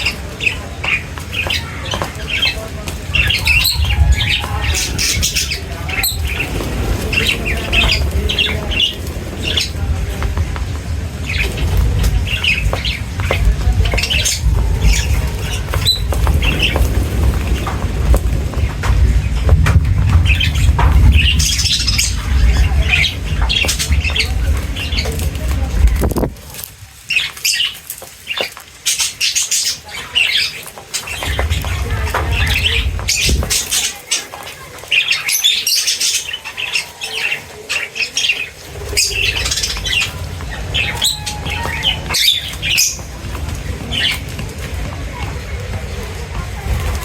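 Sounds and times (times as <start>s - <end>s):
birds chirping and squawking: 0.0s - 47.0s
loud low rumble: 2.7s - 26.4s, 31.2s - 33.8s, 38.6s - 47.0s.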